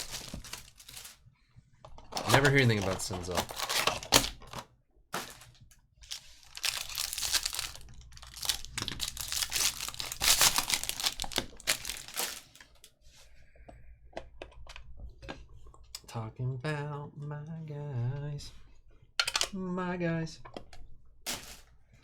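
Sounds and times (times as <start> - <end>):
card pack wrappers tearing: 0.0 - 1.2, 2.1 - 4.6, 5.2 - 12.9, 21.3 - 21.6.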